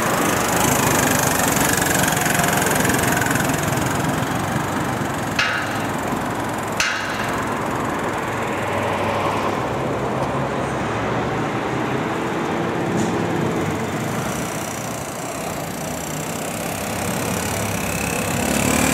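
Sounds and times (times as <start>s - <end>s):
motorcycle engine running: 0.0s - 8.8s, 12.8s - 18.9s.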